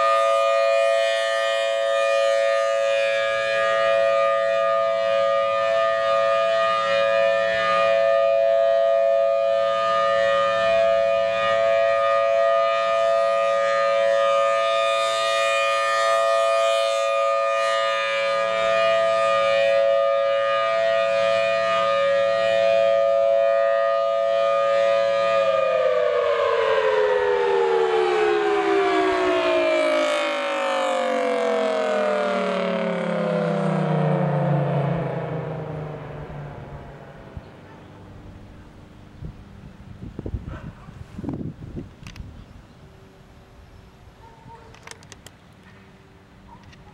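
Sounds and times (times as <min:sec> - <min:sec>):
tornado siren two-tone chord: 0:00.0 - 0:40.5.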